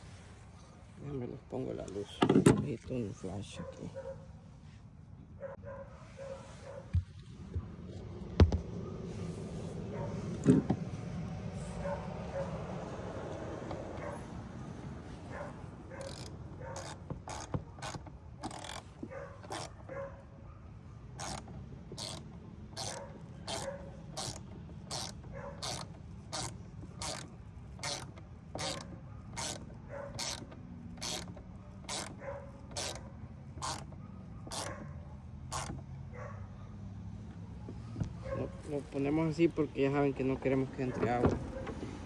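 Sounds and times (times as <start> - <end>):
ratchet wrench clicking: 16.0 - 19.8, 21.2 - 34.7, 35.5 - 35.8.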